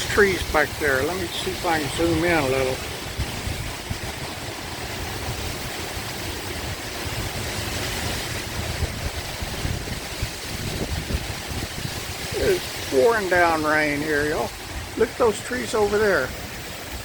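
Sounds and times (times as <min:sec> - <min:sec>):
wind buffeting microphone: 0:00.0 - 0:15.0
heavy rain pouring: 0:00.0 - 0:17.0.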